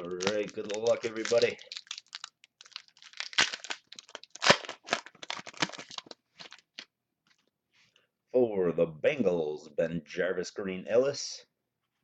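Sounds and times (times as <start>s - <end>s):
plastic wrapper crinkling and tearing: 0.0s - 6.9s.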